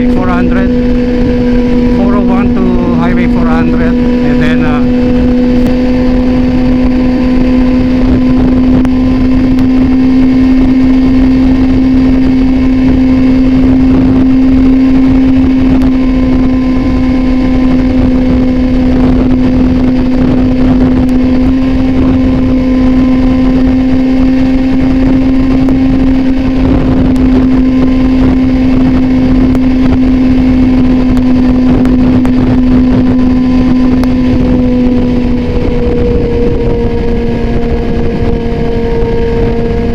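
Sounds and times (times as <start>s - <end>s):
motorcycle engine cruising: 0.0s - 39.9s
wind rumble: 0.0s - 39.9s.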